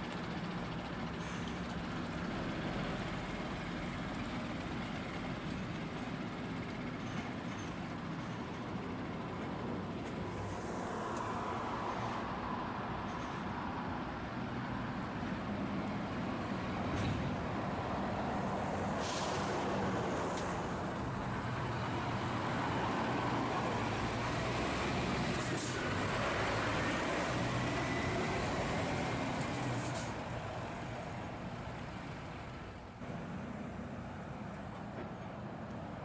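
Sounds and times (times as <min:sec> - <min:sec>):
air brake hisses: 0:19.0 - 0:19.7, 0:25.4 - 0:25.9.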